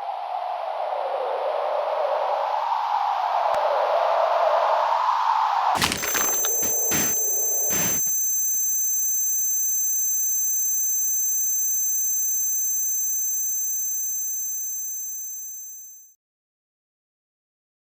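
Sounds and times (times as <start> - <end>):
high-pitched electronic tone: 5.8 - 8.2.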